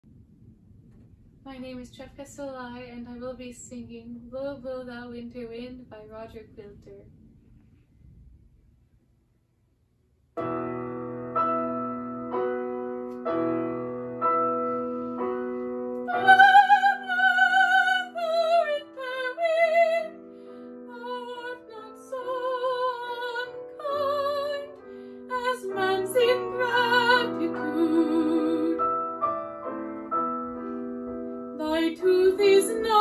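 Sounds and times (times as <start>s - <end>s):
piano chords: 10.4s - 33.0s
soprano woman singing: 16.0s - 20.2s, 20.8s - 29.0s, 31.6s - 33.0s.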